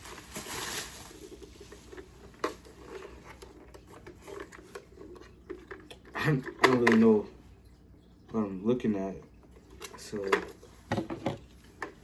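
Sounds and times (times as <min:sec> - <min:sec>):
plastic rustling and scraping: 0:00.0 - 0:07.2.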